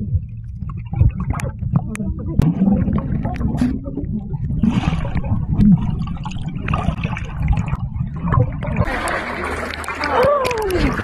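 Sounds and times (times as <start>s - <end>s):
muffled water sloshing and gurgling: 0.0s - 11.0s.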